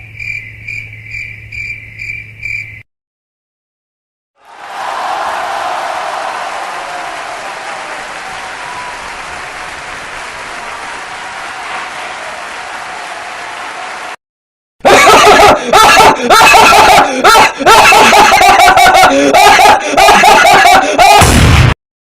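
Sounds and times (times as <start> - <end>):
crowd cheering and applauding: 4.4 - 14.2.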